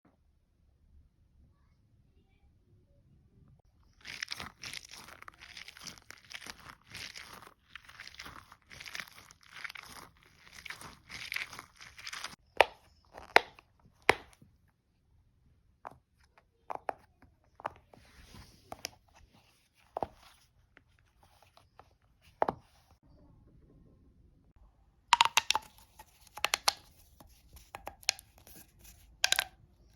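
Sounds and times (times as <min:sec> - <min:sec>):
crinkly rustling: 0:03.8 - 0:12.4
fidget toys clicking and tapping: 0:25.2 - 0:26.9.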